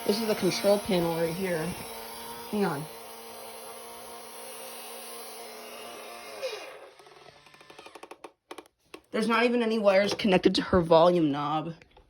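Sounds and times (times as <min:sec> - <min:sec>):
small electric motor humming: 0:00.0 - 0:08.3.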